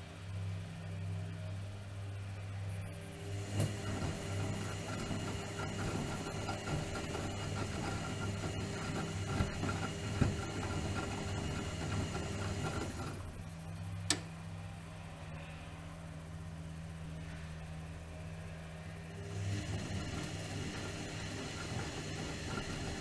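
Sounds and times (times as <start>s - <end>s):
washing machine motor humming: 3.0s - 14.4s, 19.1s - 23.0s
sharp click: 14.0s - 14.3s.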